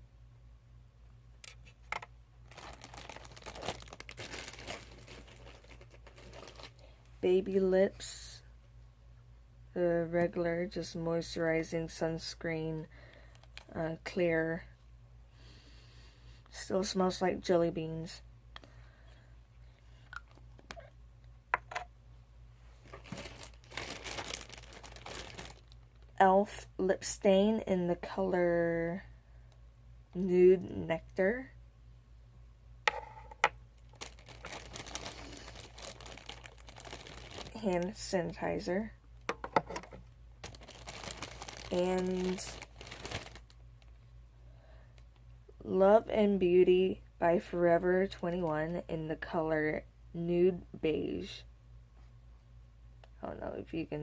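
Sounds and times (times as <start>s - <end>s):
plastic bag crinkling: 2.4s - 7.2s, 13.2s - 13.7s, 22.8s - 26.2s, 33.0s - 38.5s, 39.7s - 43.9s.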